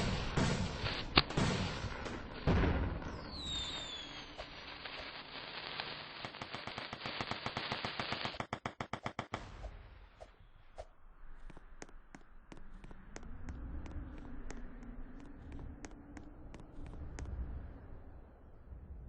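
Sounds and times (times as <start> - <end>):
fireworks cracking bangs: 0.0 - 9.9.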